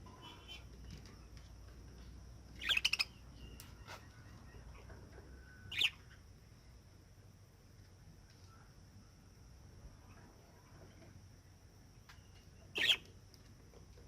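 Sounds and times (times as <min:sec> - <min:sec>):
faint steady background noise: 0:00.0 - 0:14.0
parrots squawking: 0:02.6 - 0:03.2, 0:05.7 - 0:06.2, 0:12.8 - 0:13.0.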